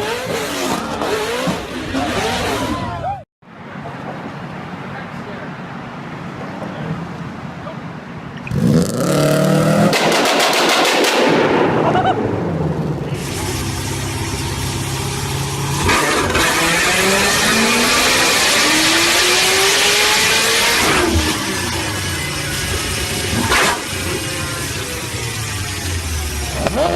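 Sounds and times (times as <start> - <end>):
engine revving: 0.0 - 2.9, 8.4 - 12.0, 13.1 - 26.9.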